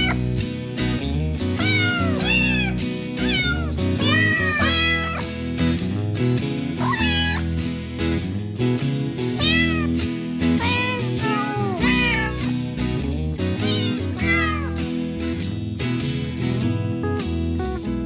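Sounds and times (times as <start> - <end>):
cat meowing: 0.0 - 0.2, 1.6 - 5.2, 6.8 - 7.5, 9.4 - 10.0, 10.6 - 12.6, 13.6 - 14.8.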